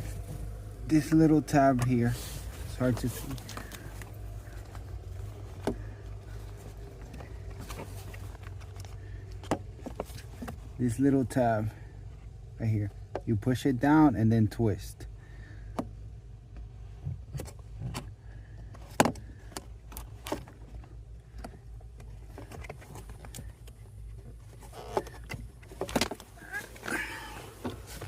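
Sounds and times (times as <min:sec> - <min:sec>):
low steady hum: 0:00.0 - 0:28.0.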